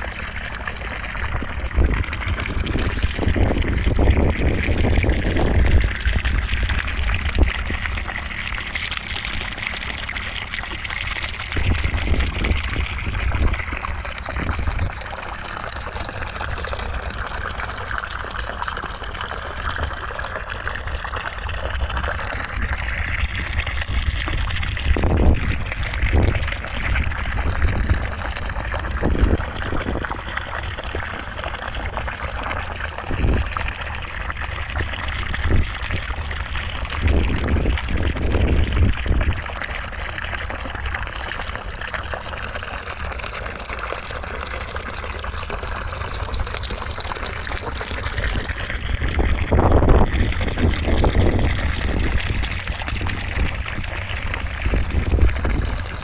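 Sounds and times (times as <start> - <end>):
deep rumble: 10.2 - 17.9, 20.6 - 39.6.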